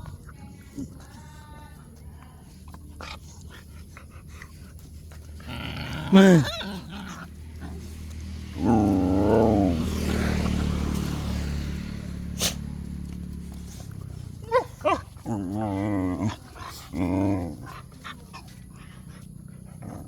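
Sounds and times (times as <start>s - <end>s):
dog growling: 2.6s - 20.0s
dog whining growls: 5.2s - 11.5s, 13.5s - 20.0s
dog yipping: 14.4s - 15.1s.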